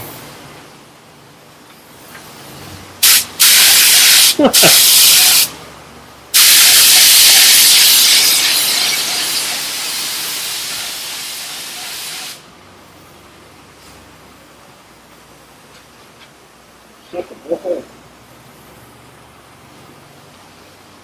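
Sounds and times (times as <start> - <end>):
air spray gun hissing: 3.0 - 5.5, 6.3 - 12.4.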